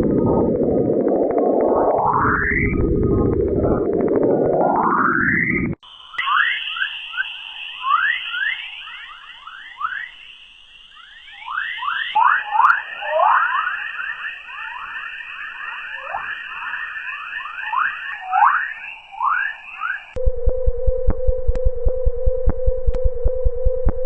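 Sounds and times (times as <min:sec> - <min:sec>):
quick falling whistles: 0:05.1 - 0:20.2
steady high tone: 0:05.8 - 0:23.9.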